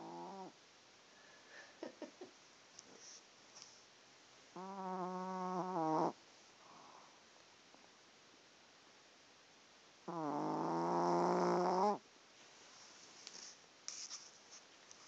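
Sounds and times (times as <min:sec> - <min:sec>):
pet snoring: 0:00.0 - 0:00.6, 0:04.5 - 0:06.2, 0:10.0 - 0:12.0.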